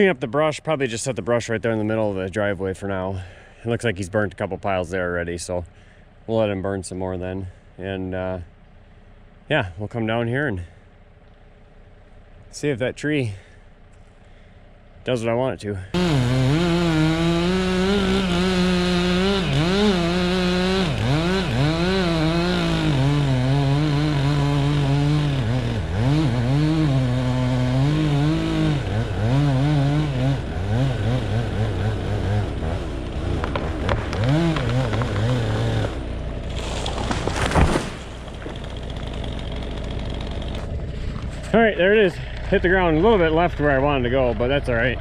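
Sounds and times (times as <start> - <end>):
chainsaw cutting at high revs: 15.9 - 40.8
tree crashing down: 33.2 - 40.2.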